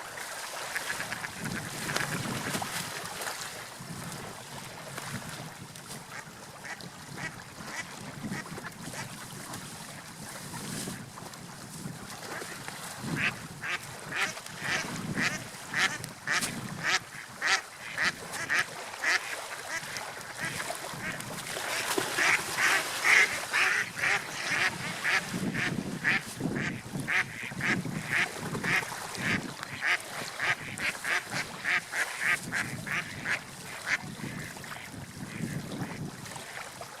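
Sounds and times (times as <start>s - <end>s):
ducks quacking: 0.7s - 2.2s, 13.2s - 36.1s.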